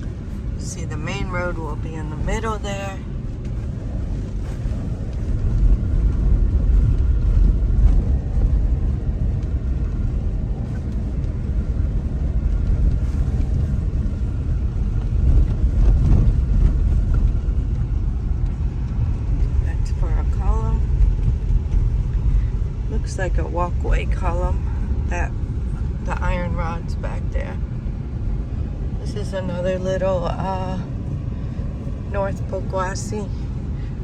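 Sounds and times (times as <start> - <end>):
car road noise and engine rumble: 0.0 - 34.0.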